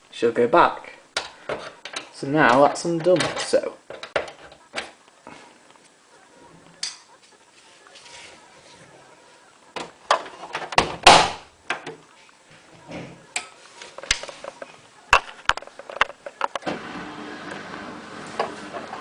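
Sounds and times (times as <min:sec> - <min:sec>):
objects being handled: 0:11.7 - 0:16.6.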